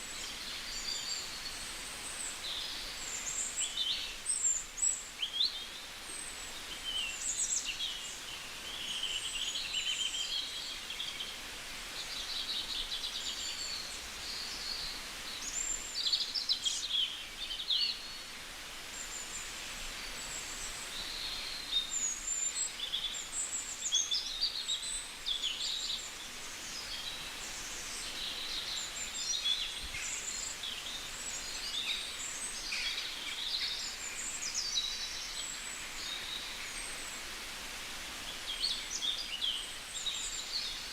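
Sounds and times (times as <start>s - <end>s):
steady hiss: 0.0s - 40.9s
birds singing and calling: 18.9s - 37.2s.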